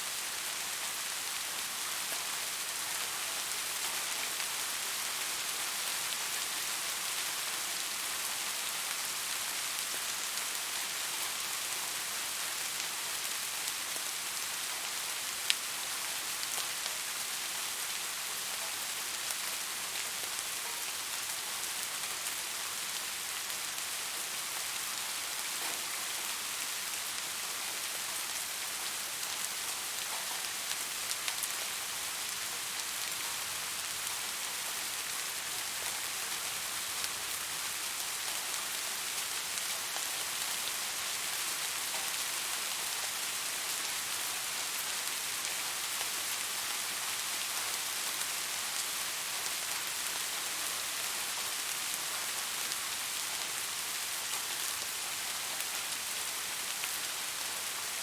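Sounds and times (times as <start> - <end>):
steady rain hiss: 0.0 - 58.0.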